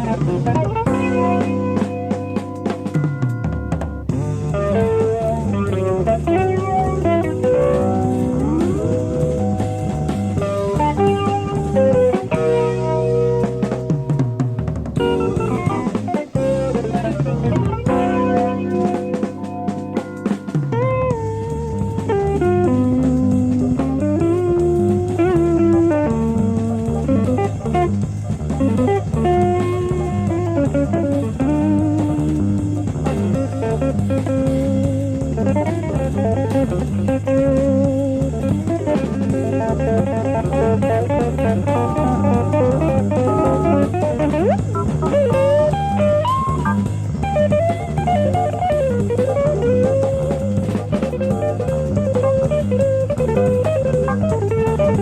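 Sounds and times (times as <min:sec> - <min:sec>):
electric guitar lead line: 0:00.0 - 0:55.0
jazz fusion band playing: 0:00.0 - 0:55.0.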